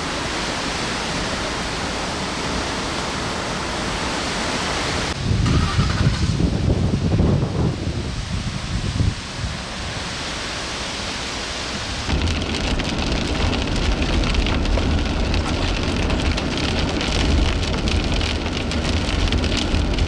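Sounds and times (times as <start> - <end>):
heavy rain falling: 9.9 - 20.0
low rumble: 12.1 - 20.0.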